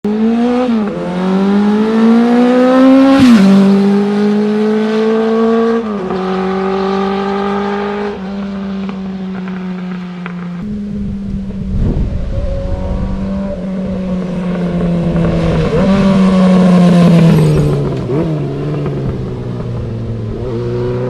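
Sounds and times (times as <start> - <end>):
motorcycle engine running: 8.8 - 21.0.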